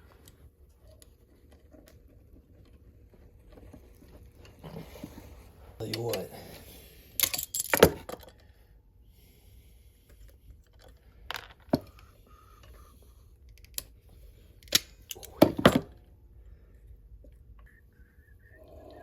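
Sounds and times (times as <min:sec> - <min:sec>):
metallic clicks of tools and parts: 0:07.2 - 0:08.4, 0:13.4 - 0:14.0, 0:14.6 - 0:16.0.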